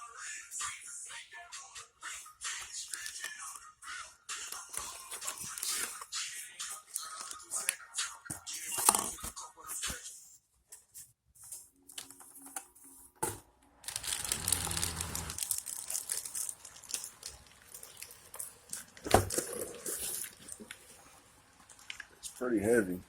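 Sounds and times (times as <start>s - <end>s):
packaging crinkling and rustling: 13.8s - 21.1s.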